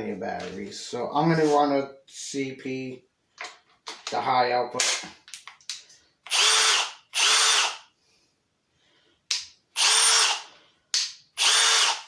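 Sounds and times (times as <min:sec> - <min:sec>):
impact driver motor whine: 0:09.8 - 0:10.5, 0:11.4 - 0:12.0.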